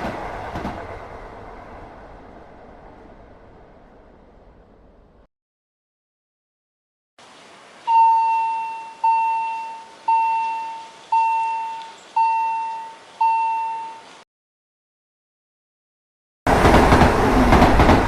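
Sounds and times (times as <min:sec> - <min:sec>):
faint hiss: 0:07.2 - 0:14.2
level crossing warning bell: 0:07.9 - 0:14.1.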